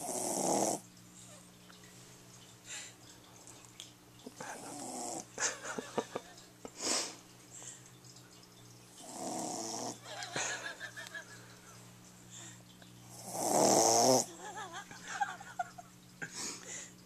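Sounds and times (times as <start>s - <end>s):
dog snoring: 0.0s - 0.9s, 4.5s - 5.3s, 9.0s - 10.0s, 13.1s - 14.3s.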